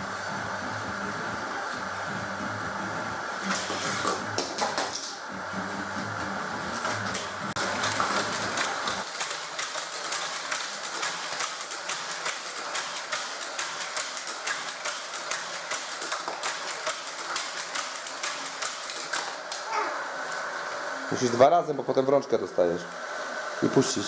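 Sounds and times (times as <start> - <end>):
toy cars clattering on plastic track: 6.8 - 20.4.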